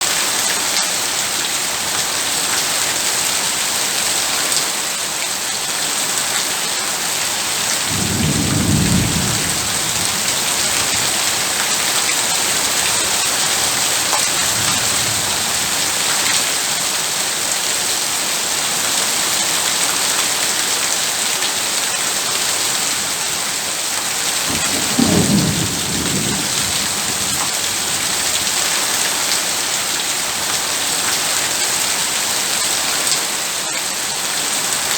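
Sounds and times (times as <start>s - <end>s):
heavy rain: 0.0s - 34.9s
thunder rumbling: 7.6s - 16.1s, 24.4s - 28.7s.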